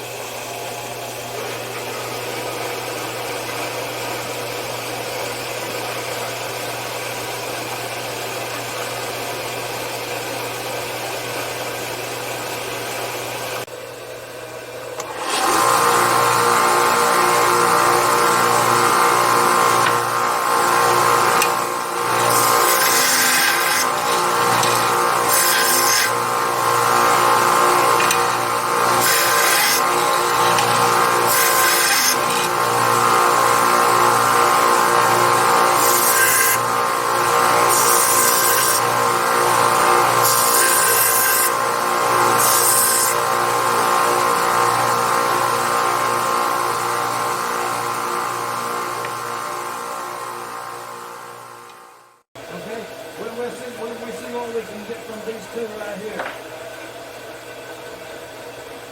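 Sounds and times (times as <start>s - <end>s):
bandsaw cutting metal: 14.9s - 51.8s.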